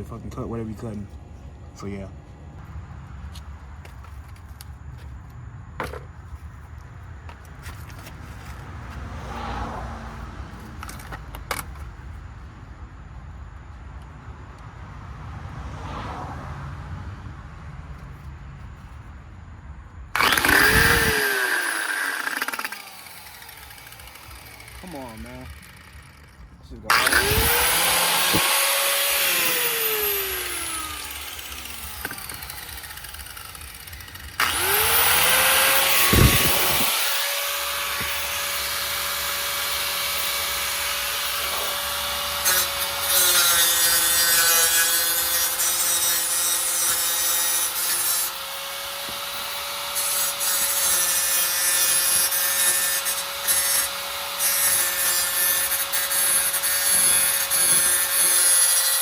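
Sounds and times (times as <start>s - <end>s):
angle grinder whining: 20.2s - 59.0s
grinding wheel cutting metal: 20.2s - 59.0s.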